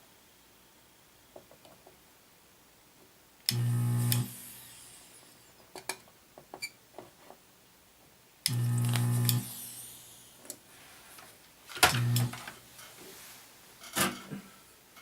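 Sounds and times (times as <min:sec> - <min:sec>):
solder sucker vacuum pump buzzing: 0:03.5 - 0:05.5, 0:08.4 - 0:10.4, 0:11.8 - 0:12.5.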